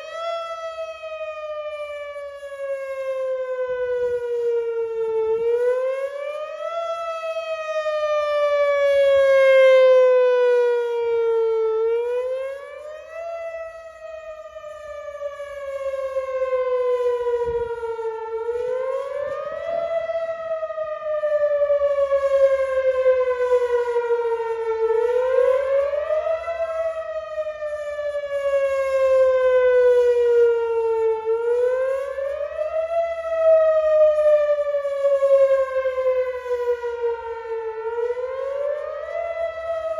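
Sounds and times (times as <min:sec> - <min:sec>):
warning siren wailing: 0:00.0 - 0:39.9.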